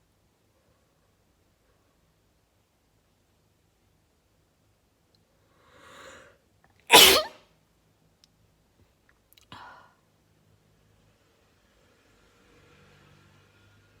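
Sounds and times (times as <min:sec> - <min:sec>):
drawn-in breath: 0:05.5 - 0:06.4
person sneezing: 0:06.9 - 0:07.4.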